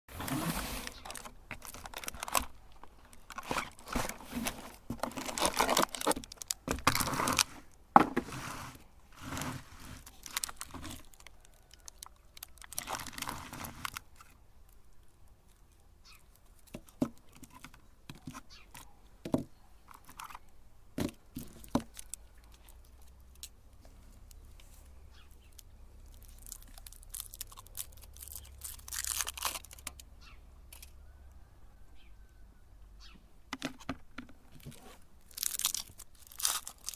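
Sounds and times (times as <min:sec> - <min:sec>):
foil wrappers crinkling: 0:00.1 - 0:07.7, 0:09.1 - 0:14.4, 0:25.4 - 0:30.0, 0:34.6 - 0:36.9.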